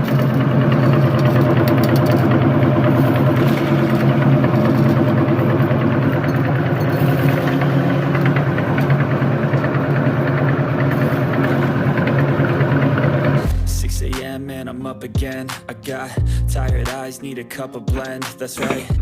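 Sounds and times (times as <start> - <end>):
candy crackling in grinder: 0.0 - 13.5
meat grinder motor humming: 0.0 - 13.5.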